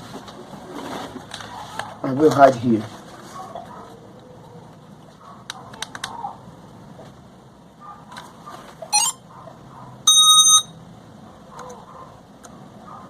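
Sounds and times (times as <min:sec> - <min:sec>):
high electronic beep: 0:09.0 - 0:09.2, 0:10.1 - 0:10.7
warbling electronic chirp: 0:09.0 - 0:09.2.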